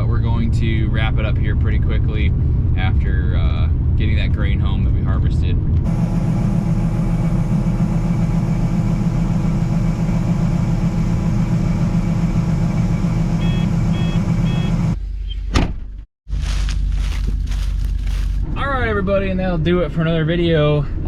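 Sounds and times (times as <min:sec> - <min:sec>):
vehicle engine running: 0:00.0 - 0:15.1, 0:16.3 - 0:20.5
short beeps: 0:13.4 - 0:14.8.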